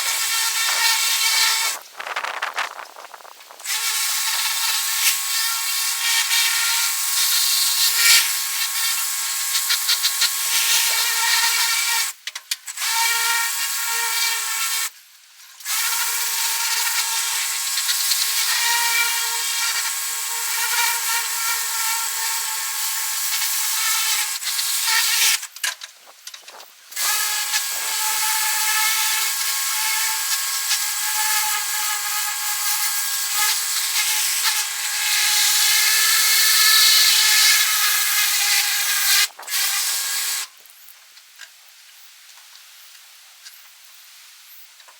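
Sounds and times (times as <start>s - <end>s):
handheld power tool running: 0.0s - 1.8s, 3.6s - 12.1s, 15.7s - 25.5s, 26.9s - 40.5s.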